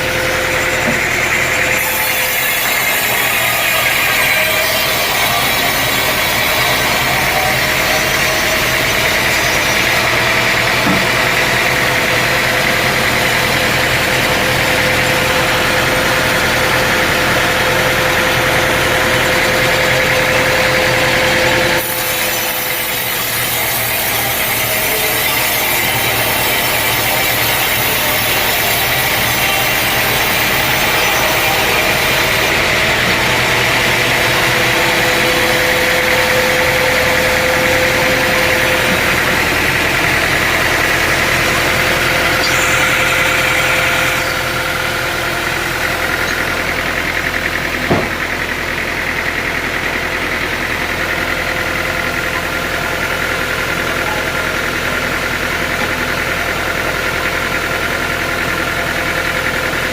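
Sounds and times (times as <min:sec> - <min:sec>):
blade cutting through wood: 0:00.0 - 0:16.3, 0:19.9 - 0:46.9
sawmill engine drone: 0:00.0 - 0:59.9.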